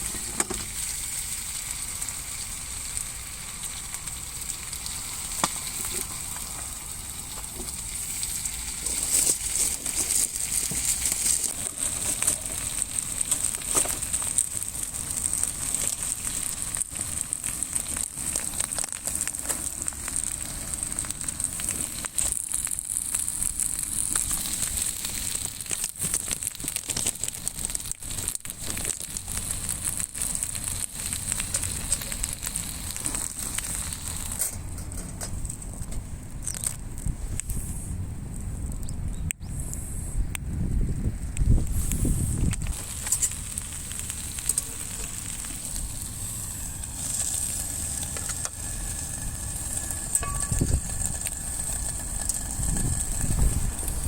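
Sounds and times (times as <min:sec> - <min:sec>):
steady high hiss: 0:00.0 - 0:26.2, 0:41.2 - 0:54.0
campfire crackling and popping: 0:00.0 - 0:54.0.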